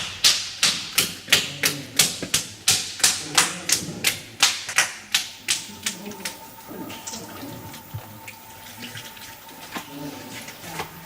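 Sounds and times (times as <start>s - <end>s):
hand slapping clay: 0.0s - 6.4s.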